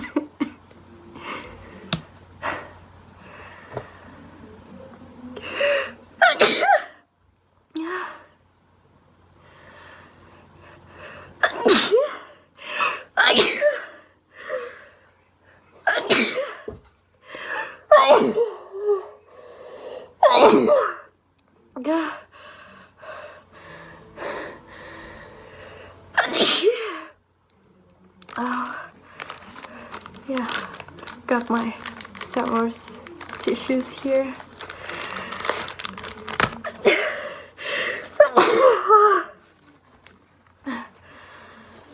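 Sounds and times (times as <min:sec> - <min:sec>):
woman sneezing: 0:17.9 - 0:18.6, 0:20.2 - 0:21.0, 0:38.2 - 0:39.4
catching breaths: 0:22.3 - 0:26.1, 0:28.4 - 0:31.1, 0:34.5 - 0:38.2, 0:40.6 - 0:41.9.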